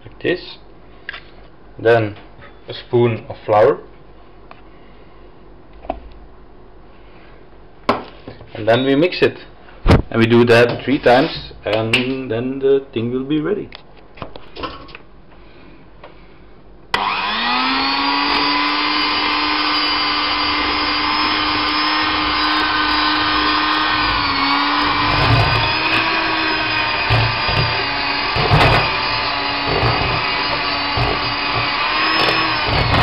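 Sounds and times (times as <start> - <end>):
electric mixer running: 17.0 - 33.0.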